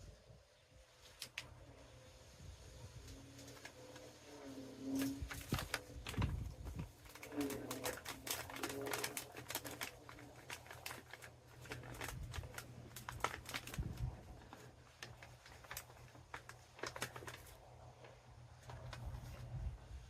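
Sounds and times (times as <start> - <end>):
small clicks and scrapes: 3.0 - 19.6
hands rustling in soil: 5.0 - 20.0.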